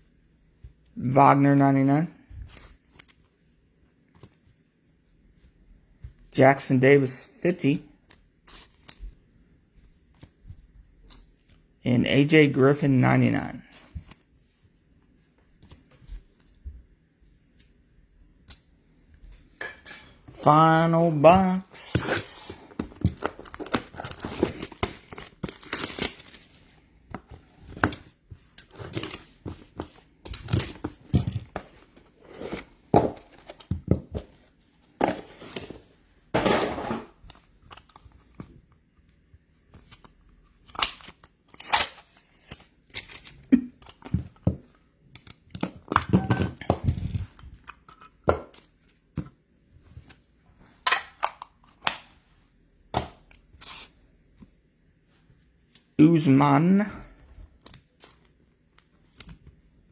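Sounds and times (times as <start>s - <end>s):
packaging tearing and crinkling: 23.0s - 26.5s.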